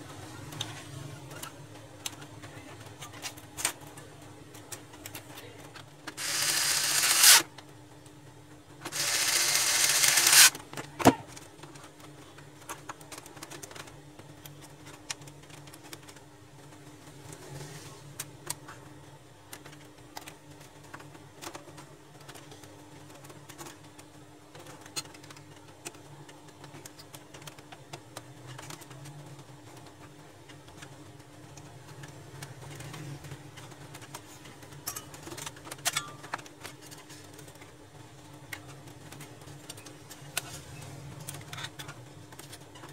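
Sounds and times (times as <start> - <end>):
steady low hum: 0.0 - 10.8
powered screwdriver driving screws: 6.2 - 7.4, 8.9 - 10.5.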